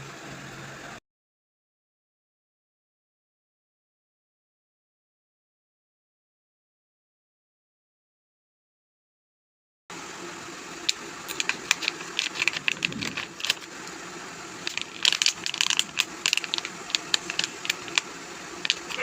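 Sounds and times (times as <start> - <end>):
plastic packaging crackling: 10.8 - 13.8, 14.6 - 19.0.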